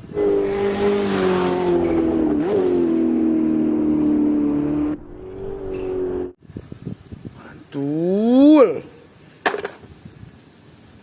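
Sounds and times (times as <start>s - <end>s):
race car engine: 0.0s - 6.4s.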